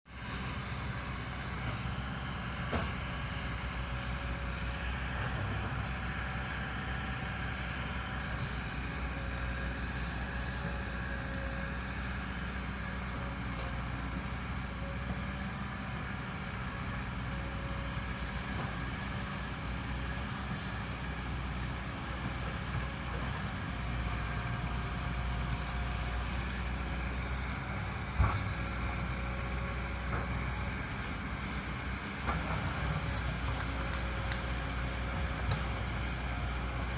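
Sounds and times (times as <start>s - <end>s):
excavator diesel engine running: 0.1s - 36.9s.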